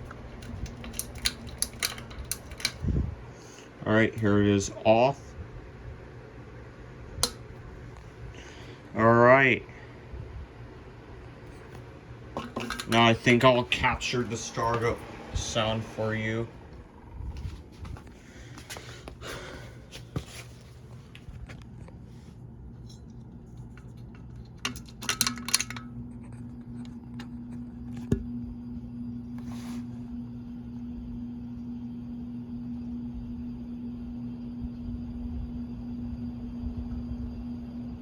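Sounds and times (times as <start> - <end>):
ceiling fan motor hum: 0.0 - 38.0
pull-chain switch clicks: 0.4 - 2.8, 7.2 - 7.5.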